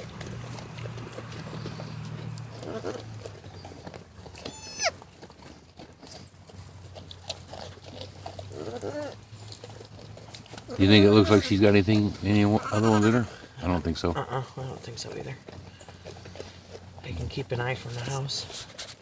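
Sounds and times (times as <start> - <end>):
goats bleating: 4.4 - 5.0, 10.7 - 11.8, 12.4 - 14.6.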